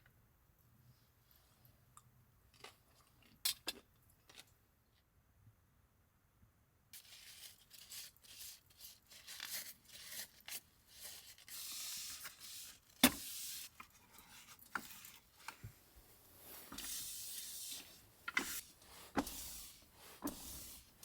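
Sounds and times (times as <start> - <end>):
rustling and scraping of handled objects: 7.0 - 21.0.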